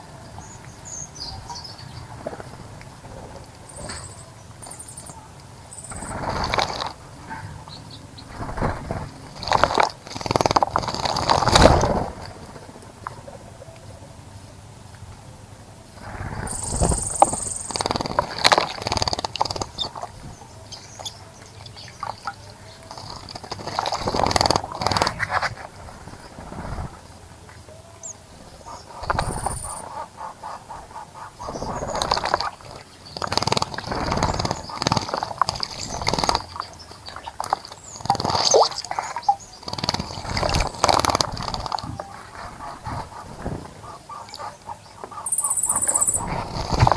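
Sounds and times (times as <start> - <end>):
birds splashing in water: 0.0 - 13.5, 16.0 - 46.9
high thin bird call: 45.2 - 46.3.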